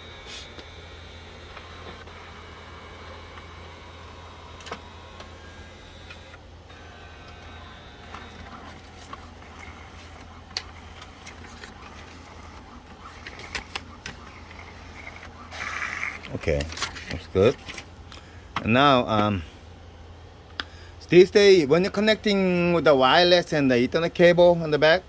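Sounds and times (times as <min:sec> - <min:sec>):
printer sharp clicks: 0:00.0 - 0:18.0
printer mechanical whine: 0:00.0 - 0:25.0.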